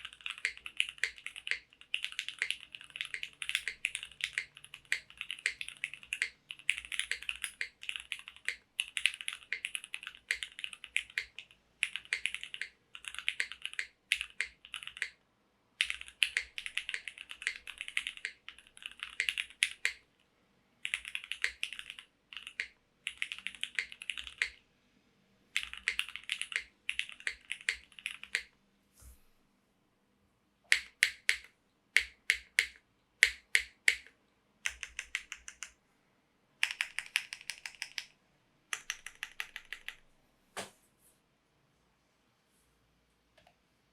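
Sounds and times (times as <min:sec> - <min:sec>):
mechanical keyboard typing: 0:00.0 - 0:15.2, 0:15.8 - 0:20.1, 0:20.8 - 0:24.6, 0:25.5 - 0:28.5, 0:30.7 - 0:35.8, 0:36.6 - 0:38.1, 0:38.7 - 0:40.0.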